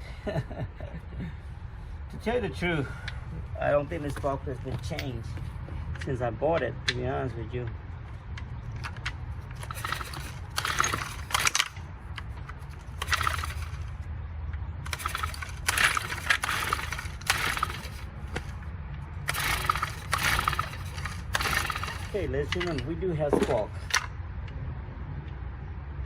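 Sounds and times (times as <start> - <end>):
recoil pull-starter rasping whir: 8.8 - 14.0, 14.8 - 22.9.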